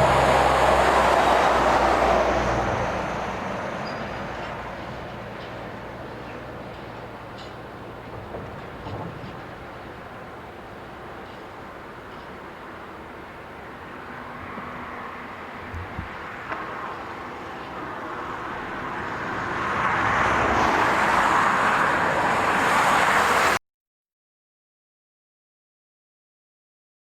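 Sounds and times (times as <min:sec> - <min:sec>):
vehicle passing: 0:00.0 - 0:06.0, 0:18.1 - 0:23.6.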